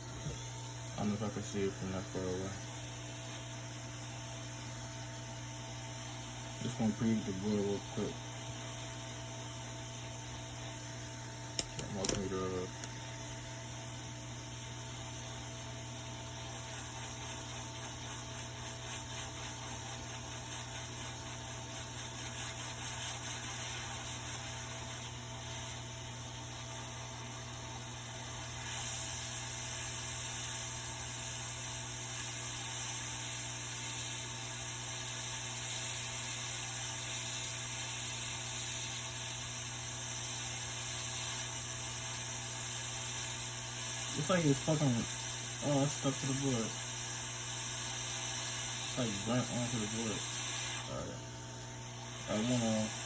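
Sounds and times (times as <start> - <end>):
steady hum: 0.0 - 26.6, 48.3 - 53.0
airy hiss: 31.9 - 53.0.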